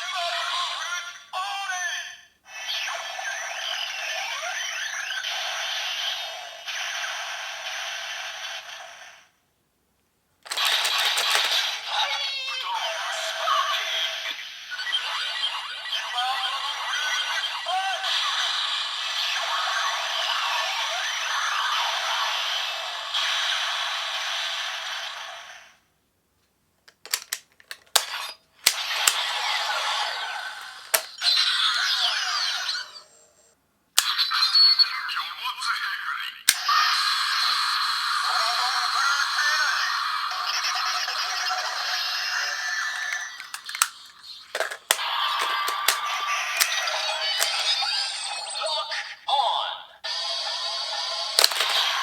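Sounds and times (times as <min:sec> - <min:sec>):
toy speaker hissing effect: 0:02.5 - 0:09.3, 0:10.5 - 0:25.8, 0:27.9 - 0:33.3, 0:36.4 - 0:48.7, 0:50.1 - 0:52.0
rattling clinking toy sound effect: 0:10.5 - 0:12.0, 0:26.9 - 0:29.8, 0:42.3 - 0:48.4, 0:51.1 - 0:52.0.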